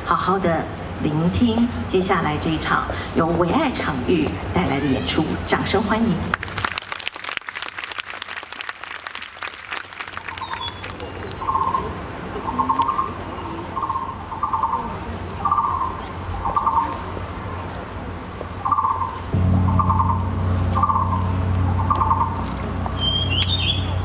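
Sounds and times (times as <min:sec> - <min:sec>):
audience applause: 0:06.6 - 0:10.4.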